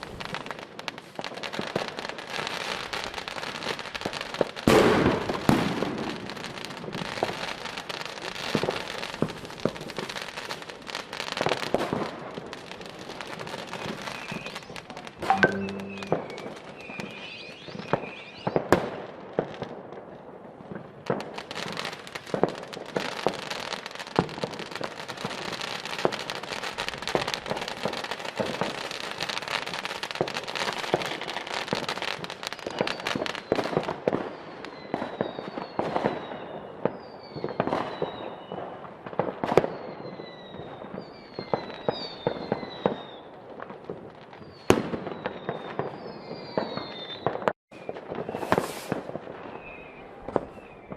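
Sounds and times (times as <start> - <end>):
fireworks banging and crackling: 0.0 - 50.9
falling firework whistles: 13.2 - 18.9, 27.1 - 38.8, 39.4 - 43.3, 44.4 - 50.9.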